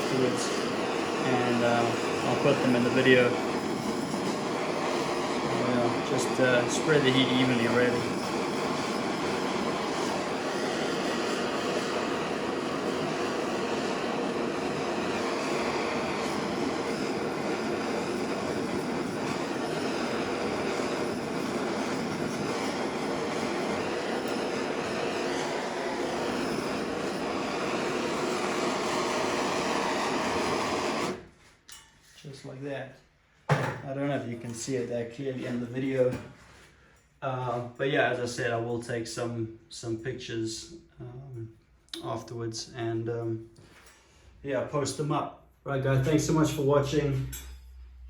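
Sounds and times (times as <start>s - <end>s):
blowtorch flame hissing: 0.0s - 31.4s.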